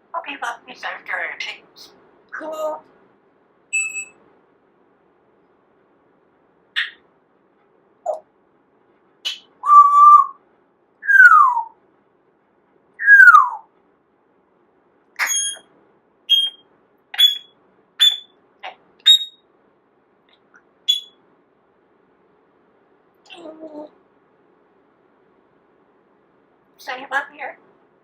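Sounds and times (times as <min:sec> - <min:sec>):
parrot high chirps: 0:03.7 - 0:04.2, 0:06.8 - 0:07.0, 0:09.2 - 0:10.4, 0:11.0 - 0:11.7, 0:13.0 - 0:13.7, 0:15.2 - 0:15.7, 0:16.3 - 0:16.6, 0:17.2 - 0:18.4, 0:19.0 - 0:19.4, 0:20.9 - 0:21.2
parrot whistling: 0:03.7 - 0:04.2, 0:06.8 - 0:07.0, 0:09.3 - 0:10.4, 0:11.0 - 0:11.7, 0:13.0 - 0:13.6, 0:15.2 - 0:15.6, 0:16.3 - 0:16.6, 0:17.2 - 0:18.3, 0:19.0 - 0:19.4, 0:20.9 - 0:21.2.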